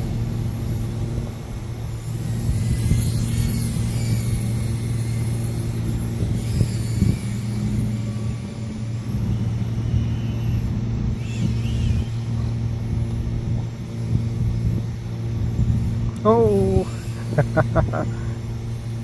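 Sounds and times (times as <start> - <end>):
small drone motor whine: 0.0 - 19.0
steady low hum: 0.0 - 19.0.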